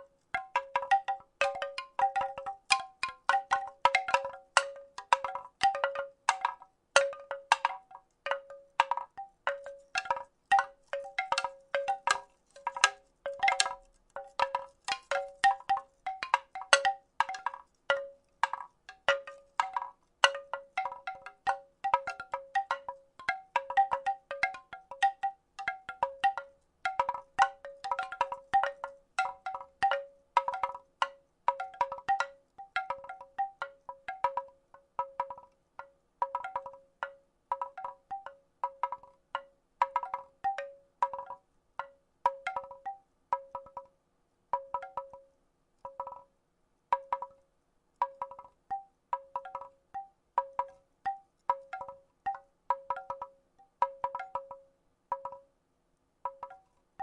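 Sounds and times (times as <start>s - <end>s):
wooden rattle clacking: 0.0s - 42.8s.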